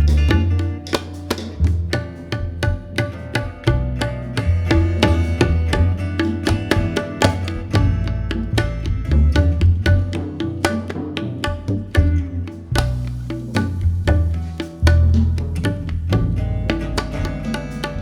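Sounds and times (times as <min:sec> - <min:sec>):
jazz band playing: 0:00.0 - 0:10.8
sustained bass notes: 0:00.0 - 0:18.0
tabla strokes: 0:00.0 - 0:18.0.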